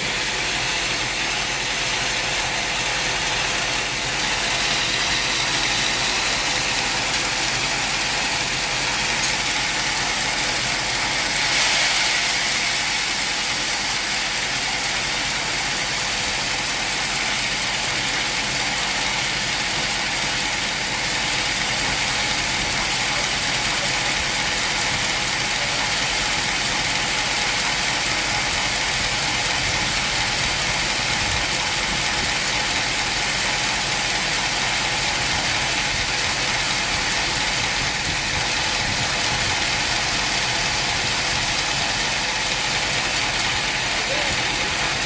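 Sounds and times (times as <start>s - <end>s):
sawmill machinery drone: 0.0s - 45.0s.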